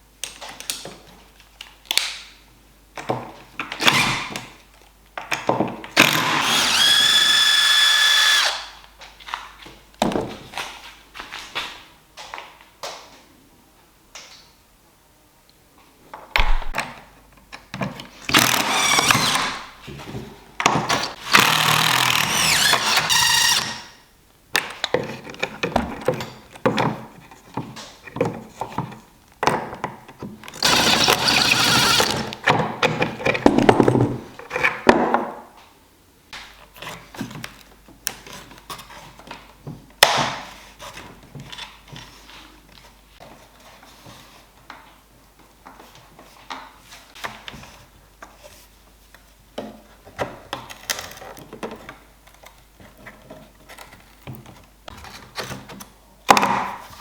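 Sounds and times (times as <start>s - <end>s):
wooden knocks and thunks: 16.4s - 16.8s, 32.5s - 34.4s.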